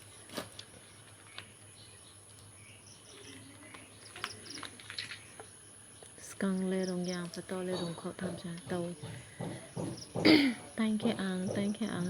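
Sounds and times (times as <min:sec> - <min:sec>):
small birds chirping: 0:00.0 - 0:12.0
light clicks and knocks: 0:07.7 - 0:12.0.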